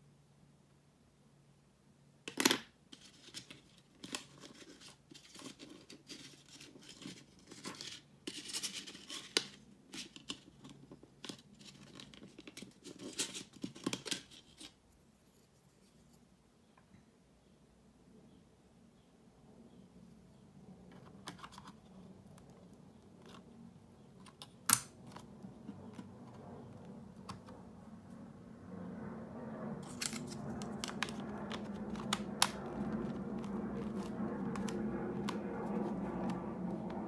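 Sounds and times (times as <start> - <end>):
plastic clicks and scrapes: 20.9 - 27.6, 29.8 - 37.0.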